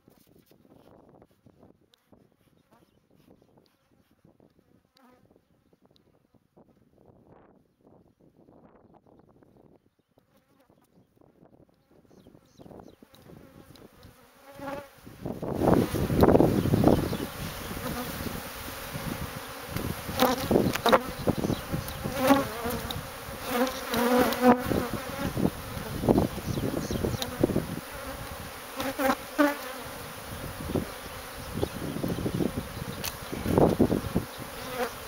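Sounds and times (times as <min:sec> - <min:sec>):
honeybees buzzing: 0:12.3 - 0:35.0.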